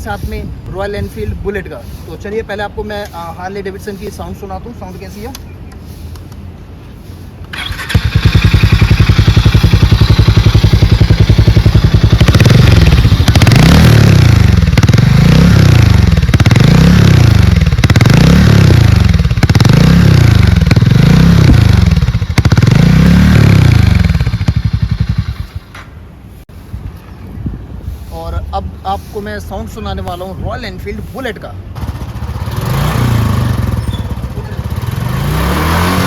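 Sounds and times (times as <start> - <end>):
motorcycle engine revving: 7.5 - 25.7, 31.8 - 36.0.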